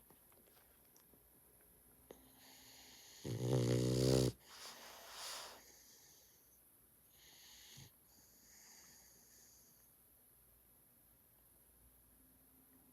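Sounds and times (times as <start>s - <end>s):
dog snoring: 2.3s - 6.3s, 7.1s - 9.8s.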